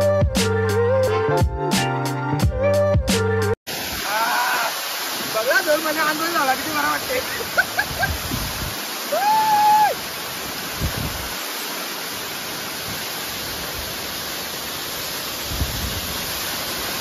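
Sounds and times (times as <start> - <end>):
waterfall rushing: 3.7 - 17.0.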